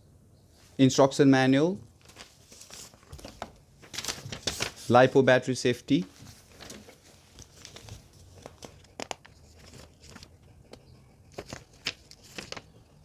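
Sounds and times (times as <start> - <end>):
paper rustling and crinkling: 1.9 - 5.2, 5.9 - 13.0.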